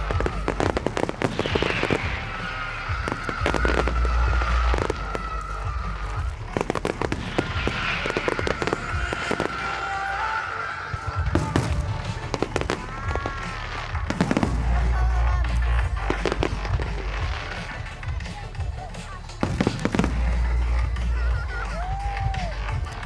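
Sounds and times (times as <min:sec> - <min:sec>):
falling firework whistle: 0:00.0 - 0:14.6
fireworks bangs and crackles: 0:00.0 - 0:23.0.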